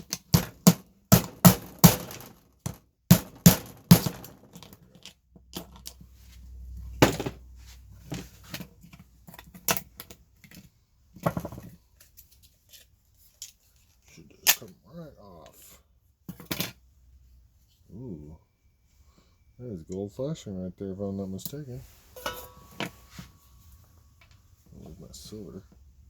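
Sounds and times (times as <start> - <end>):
tools and parts clicking: 4.0 - 6.0.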